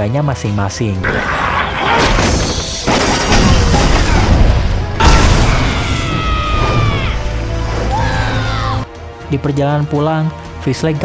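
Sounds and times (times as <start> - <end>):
loud blast: 1.8 - 6.9.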